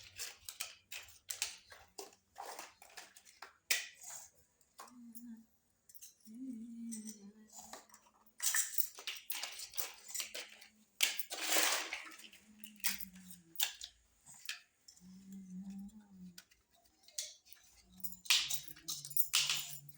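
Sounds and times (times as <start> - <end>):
plastic toy pieces clicking: 17.0 - 19.9.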